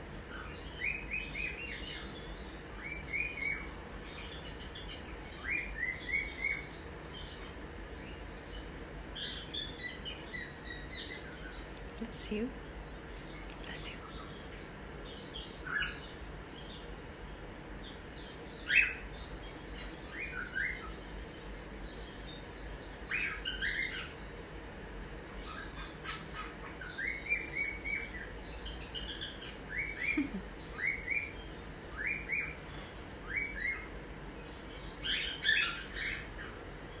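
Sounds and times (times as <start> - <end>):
faint steady hum: 0.0 - 37.0
cockatiels chirping: 23.0 - 24.2, 25.3 - 33.9, 34.7 - 36.6.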